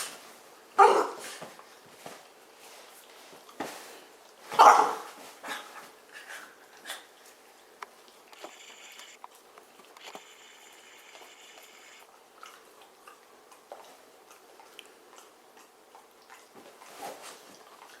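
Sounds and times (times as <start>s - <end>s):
high steady squeaking: 8.4s - 9.2s, 10.0s - 12.0s.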